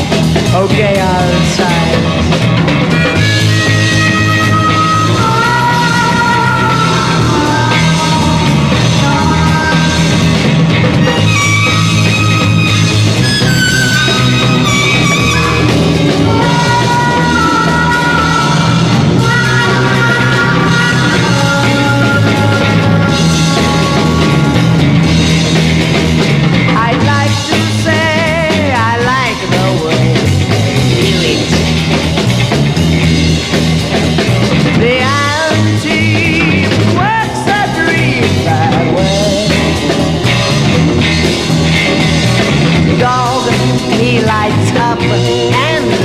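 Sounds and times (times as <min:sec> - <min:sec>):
rock band playing: 0:00.0 - 0:46.0
male lead vocal: 0:00.4 - 0:02.4, 0:03.8 - 0:10.4, 0:16.1 - 0:25.1, 0:26.8 - 0:31.7, 0:34.8 - 0:40.3, 0:42.9 - 0:46.0.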